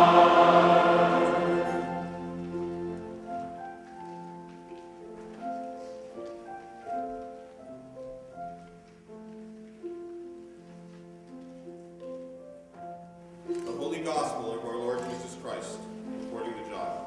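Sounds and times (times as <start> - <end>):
keyboard playing slow chords: 0.0 - 3.9.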